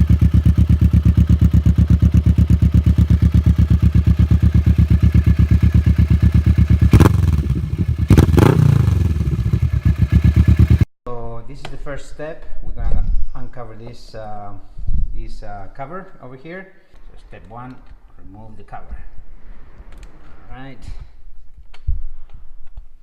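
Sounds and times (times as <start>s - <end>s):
motorcycle engine idling and revving: 0.0s - 10.9s.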